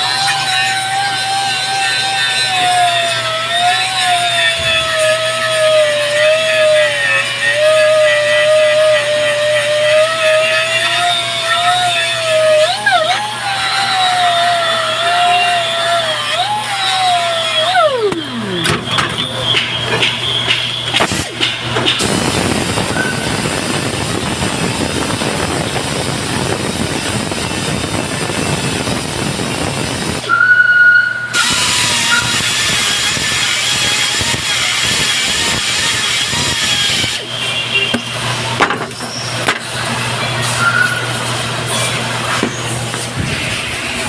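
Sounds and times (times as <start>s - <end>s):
welding arc crackling hiss: 20.9s - 30.3s.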